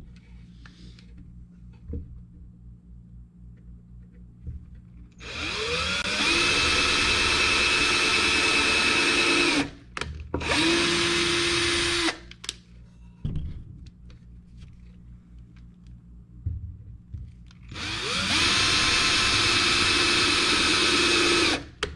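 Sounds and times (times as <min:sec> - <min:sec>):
power drill whining: 0:05.2 - 0:09.8, 0:10.4 - 0:12.2, 0:17.7 - 0:21.8.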